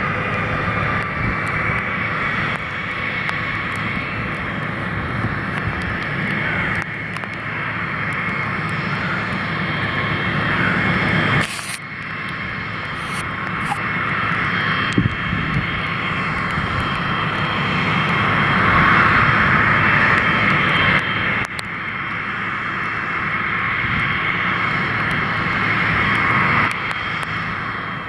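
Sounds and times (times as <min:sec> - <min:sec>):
jet engines whining: 0:06.1 - 0:14.9.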